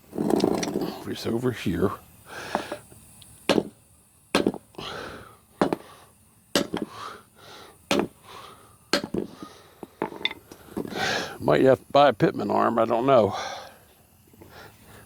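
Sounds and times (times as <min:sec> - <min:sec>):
hammer striking metal: 0:03.5 - 0:03.7, 0:04.4 - 0:04.6, 0:06.6 - 0:06.9, 0:07.9 - 0:08.1, 0:08.9 - 0:09.3.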